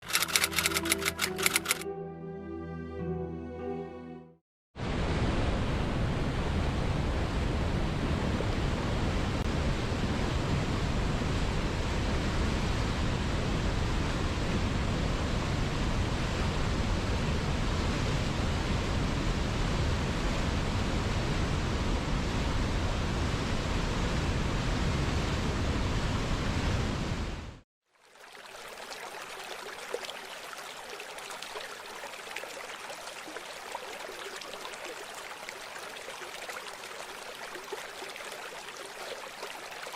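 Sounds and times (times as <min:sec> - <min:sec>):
stream of running water: 0:27.8 - 0:39.9
river water rushing: 0:28.0 - 0:39.9.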